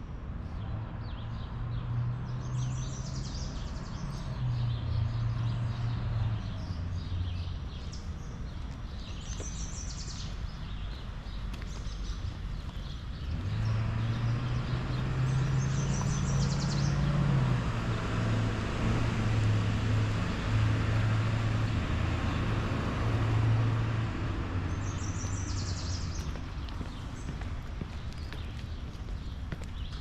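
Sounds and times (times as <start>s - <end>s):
vehicle engine hum passing: 0.6s - 30.0s
bird chirping: 2.5s - 17.2s, 24.7s - 30.0s.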